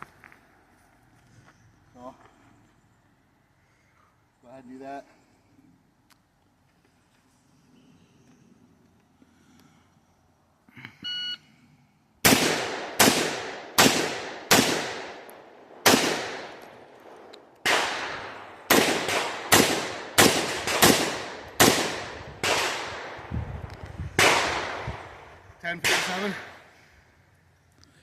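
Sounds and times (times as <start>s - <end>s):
rifle shots: 12.2s - 23.3s, 24.1s - 26.6s.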